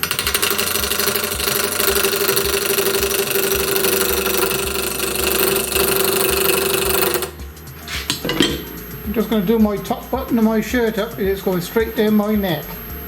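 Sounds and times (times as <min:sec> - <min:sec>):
gouge cutting wood on lathe: 0:00.0 - 0:07.3
lathe hum: 0:00.0 - 0:13.0.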